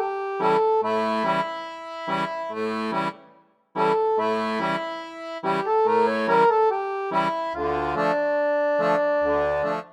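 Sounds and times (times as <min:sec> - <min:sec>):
jaunty instrumental tune: 0:00.0 - 0:09.9.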